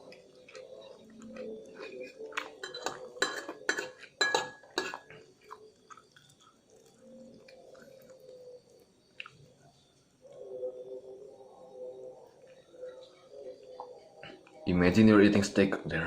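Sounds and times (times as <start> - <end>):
cutlery clinking against a dish: 1.4 - 5.5.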